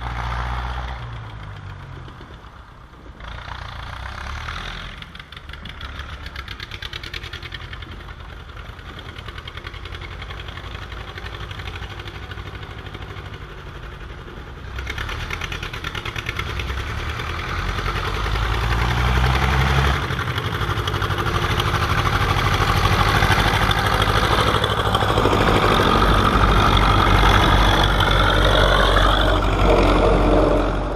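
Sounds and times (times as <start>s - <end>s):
tractor diesel engine chugging: 4.9s - 19.2s, 19.9s - 30.9s.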